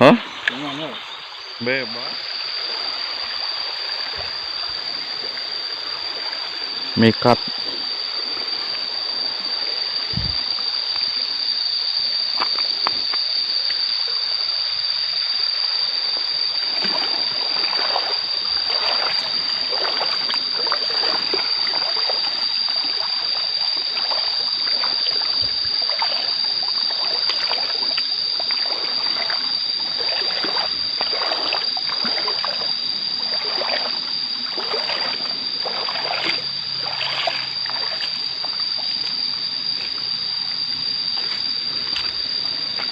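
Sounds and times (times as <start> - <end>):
river water burbling: 0.0 - 11.0, 15.8 - 42.9
steady high-pitched tone: 0.0 - 42.9
splashy gurgles: 16.8 - 22.3, 24.0 - 26.4, 27.0 - 38.1.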